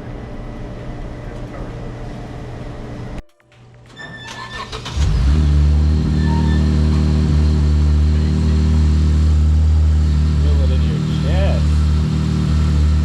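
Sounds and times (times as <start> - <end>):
car engine starting and running: 4.2 - 13.0.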